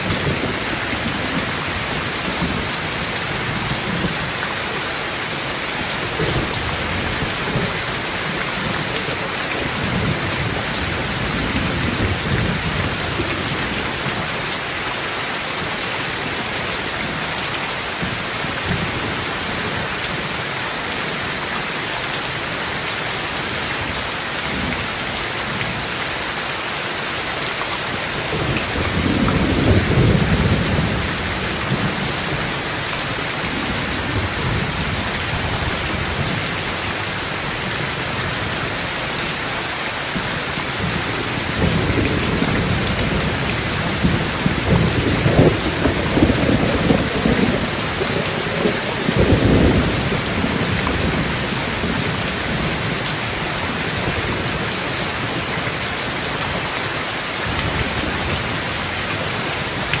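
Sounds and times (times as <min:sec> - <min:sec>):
heavy rain: 0:00.0 - 1:00.0
low rolling thunder: 0:28.3 - 0:32.5, 0:40.2 - 0:53.0.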